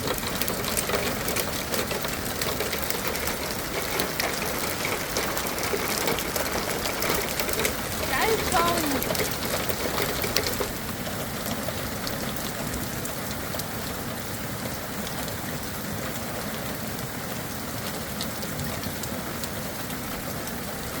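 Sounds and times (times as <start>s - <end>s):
raindrops ticking: 0.0s - 15.6s
heavy rain pouring: 0.0s - 21.0s.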